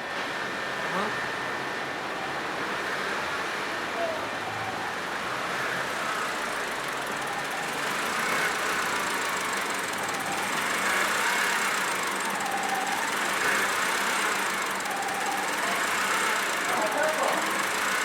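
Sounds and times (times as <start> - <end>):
car engine idling: 5.9 - 18.0.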